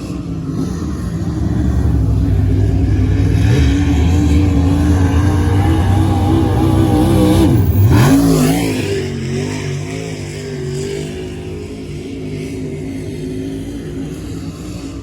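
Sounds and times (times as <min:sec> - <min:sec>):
race car engine revving: 0:00.0 - 0:11.1.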